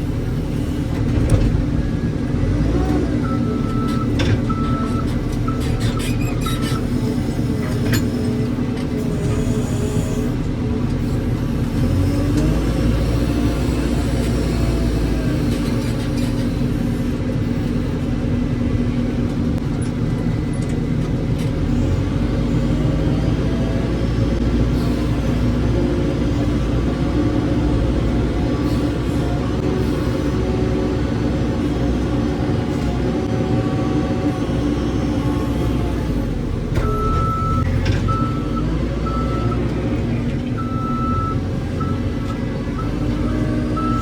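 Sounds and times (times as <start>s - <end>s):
heavy diesel engine running: 0.0s - 44.0s.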